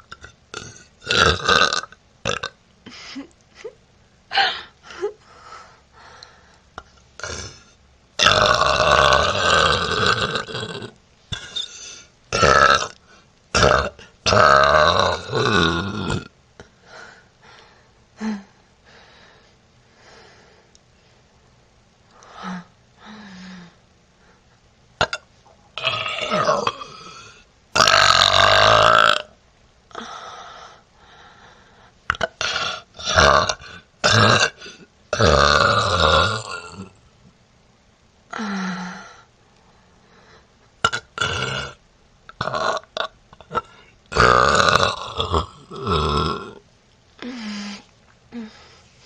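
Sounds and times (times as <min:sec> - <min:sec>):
woman burping: 0:00.0 - 0:02.6, 0:07.2 - 0:13.0, 0:13.6 - 0:16.3, 0:25.0 - 0:29.3, 0:32.1 - 0:36.9, 0:40.8 - 0:46.6.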